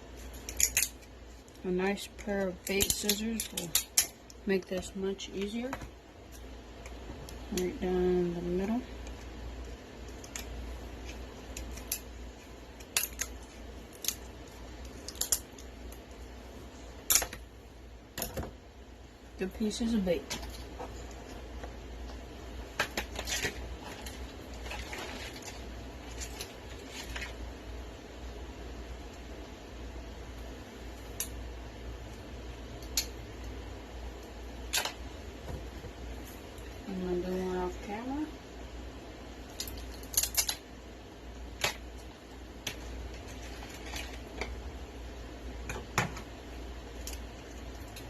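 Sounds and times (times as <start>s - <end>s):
steady low hum: 0.0s - 48.0s
scissors cracking crab shell: 0.4s - 1.1s, 2.6s - 4.2s, 10.1s - 12.1s, 12.8s - 14.4s, 15.0s - 15.6s, 32.8s - 33.1s, 39.5s - 40.6s
scissors snipping crab shell: 39.6s - 40.6s.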